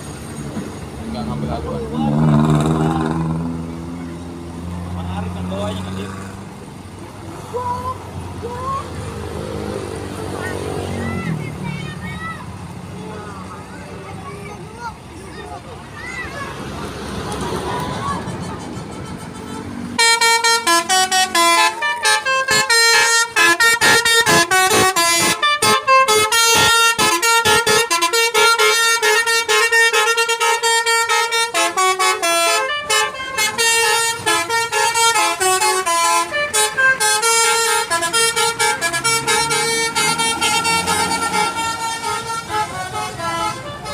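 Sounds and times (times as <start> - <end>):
melodic bus horn playing a tune: 18.2 - 43.9.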